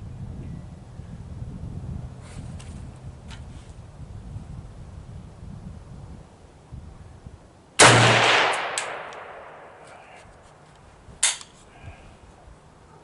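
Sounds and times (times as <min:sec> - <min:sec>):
rifle shot with echo: 0:07.8 - 0:09.8
sharp crack: 0:07.8 - 0:10.2.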